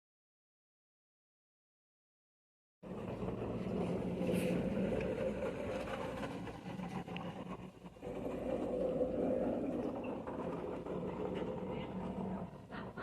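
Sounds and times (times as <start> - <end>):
low mechanical hum: 2.9 - 13.0.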